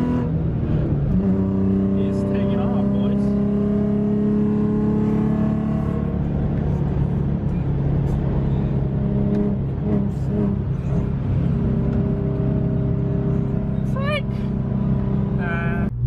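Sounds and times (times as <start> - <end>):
car engine accelerating: 0.0 - 16.0.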